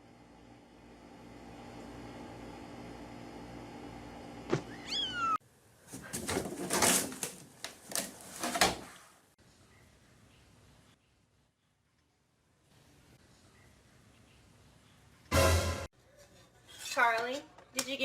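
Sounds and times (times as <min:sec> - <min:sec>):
cat meowing: 0:04.6 - 0:05.4.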